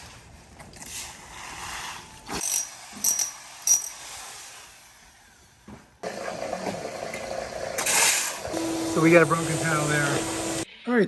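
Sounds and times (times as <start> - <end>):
hard pieces clinking: 2.4 - 4.0.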